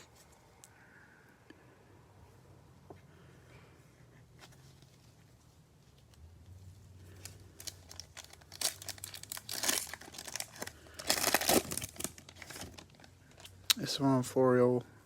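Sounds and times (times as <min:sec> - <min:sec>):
foil pack tearing and crinkling: 0:07.6 - 0:13.0.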